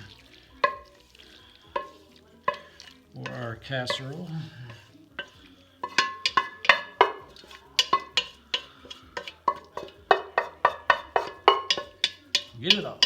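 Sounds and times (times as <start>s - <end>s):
spoon knocking and scraping metal pot: 0.0s - 13.0s.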